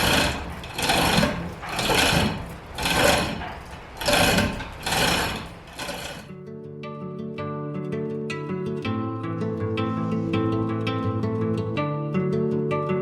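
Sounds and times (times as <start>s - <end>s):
hand hoist ratcheting: 0.0s - 6.3s.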